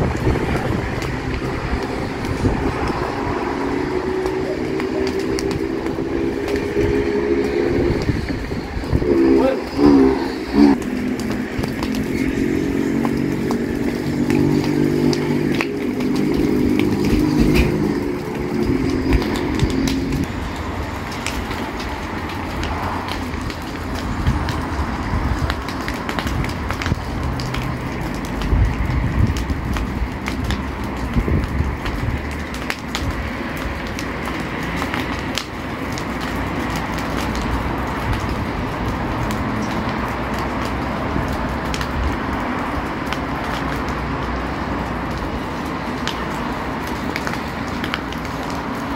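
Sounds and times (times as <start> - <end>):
low rumble: 0.0 - 20.6
engine running: 0.0 - 24.8
dry brush burning crackles: 0.0 - 48.9
fire rushing noise: 0.0 - 48.9.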